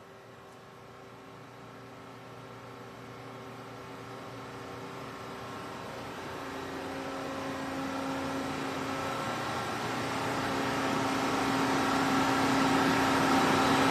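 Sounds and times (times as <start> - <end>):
constant machine hum: 0.0 - 13.9
waterjet machine hissing: 5.2 - 13.9.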